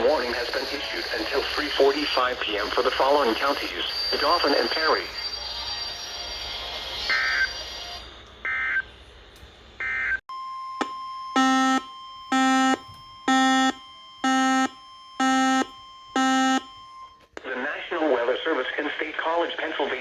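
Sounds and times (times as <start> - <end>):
digital data bursts: 0.1 - 5.4.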